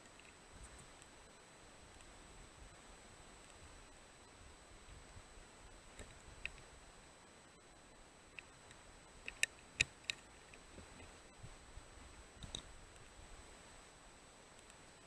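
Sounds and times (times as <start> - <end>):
low hiss: 0.0 - 15.0
faint sharp clicks: 6.0 - 6.7, 8.3 - 11.1, 12.4 - 13.2, 14.5 - 14.8.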